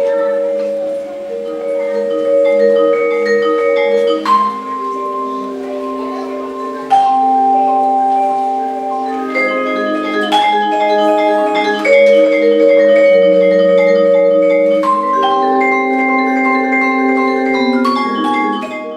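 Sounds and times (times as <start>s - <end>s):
struck notes over held chords: 0.0s - 18.9s.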